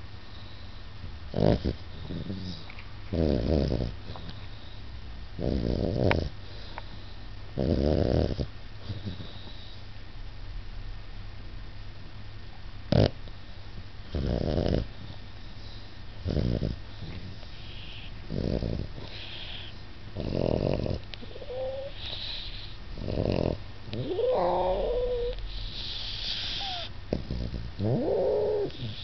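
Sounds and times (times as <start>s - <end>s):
hedgehog snoring: 1.3s - 4.0s, 5.4s - 6.4s, 7.6s - 9.4s, 12.9s - 13.2s, 14.1s - 14.9s, 16.2s - 29.0s.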